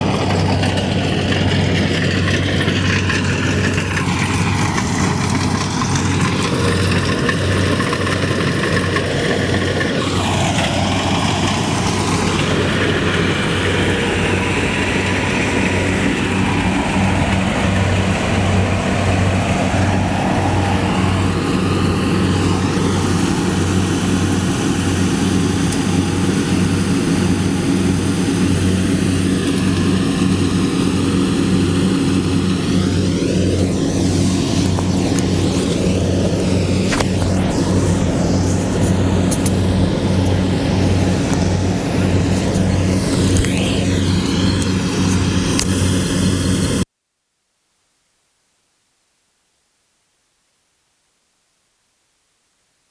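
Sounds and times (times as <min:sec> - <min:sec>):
harvester engine humming: 0:00.0 - 0:46.9.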